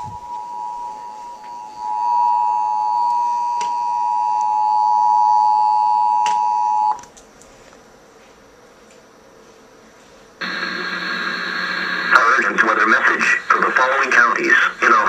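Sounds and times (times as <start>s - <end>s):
two-tone alarm: 0.0s - 7.0s, 10.4s - 12.4s
faint hiss: 7.2s - 15.0s.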